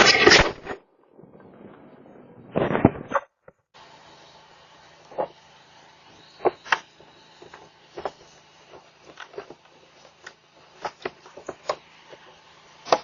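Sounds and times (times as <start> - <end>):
low hum and hiss: 3.8 - 13.0.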